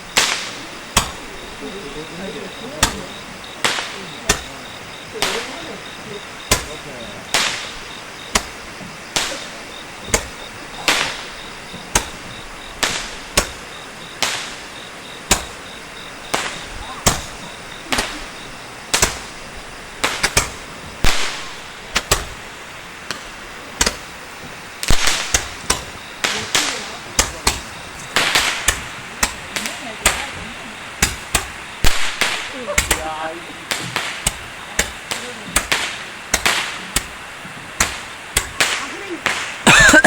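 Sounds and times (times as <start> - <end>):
fireworks bangs: 0.0 - 40.0.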